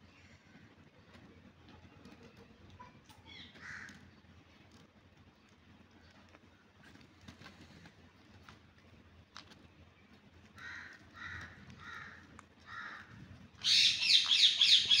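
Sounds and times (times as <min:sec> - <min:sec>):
parrot screeching calls: 0:13.6 - 0:15.0.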